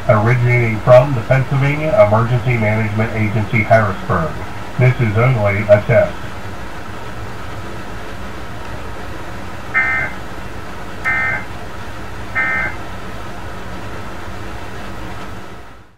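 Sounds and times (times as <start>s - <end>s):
low hum and hiss: 0.0s - 15.9s
warbling digital data bursts: 9.8s - 10.2s, 11.1s - 11.5s, 12.4s - 12.8s.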